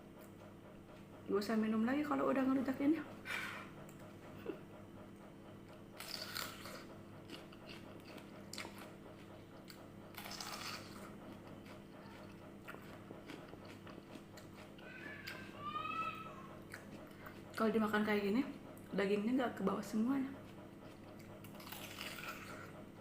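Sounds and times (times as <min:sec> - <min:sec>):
wet chewing clicks: 0:05.6 - 0:15.4, 0:16.6 - 0:17.8, 0:20.4 - 0:22.8
crunchy apple bites: 0:06.0 - 0:08.9, 0:10.1 - 0:15.4, 0:20.9 - 0:22.7.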